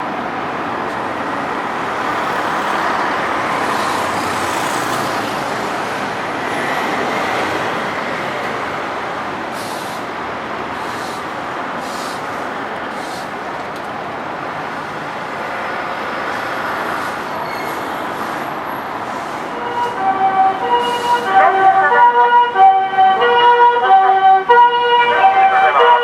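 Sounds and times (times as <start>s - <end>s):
road traffic: 0.0s - 26.0s
short hisses: 9.5s - 10.0s, 10.8s - 12.3s.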